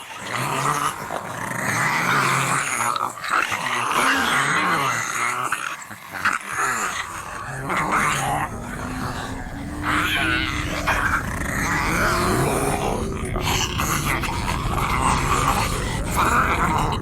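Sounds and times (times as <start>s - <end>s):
dogs growling and snarling: 0.0s - 17.0s.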